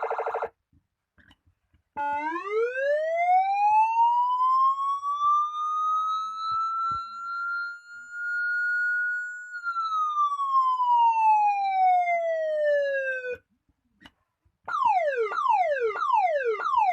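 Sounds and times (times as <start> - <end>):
electronic siren wailing: 2.0 - 13.4, 14.7 - 16.9.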